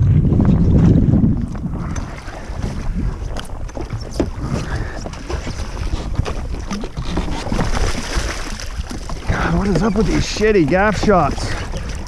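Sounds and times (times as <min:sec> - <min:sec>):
low rumble of water: 0:00.0 - 0:12.0
wind buffeting microphone: 0:00.0 - 0:12.0
small knocks and splashes: 0:05.0 - 0:12.0.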